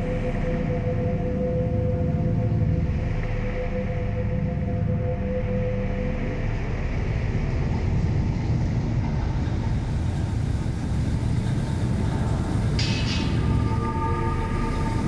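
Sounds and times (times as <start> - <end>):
low industrial rumble: 6.4 - 15.0.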